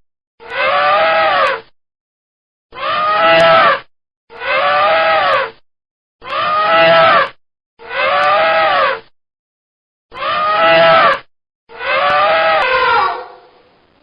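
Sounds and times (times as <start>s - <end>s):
elephant trumpeting: 0.5s - 1.6s, 6.2s - 9.0s, 10.1s - 13.6s.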